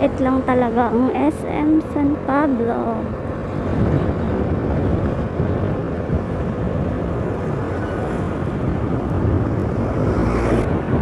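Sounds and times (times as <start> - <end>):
vehicle rumbling on road: 0.0 - 11.0.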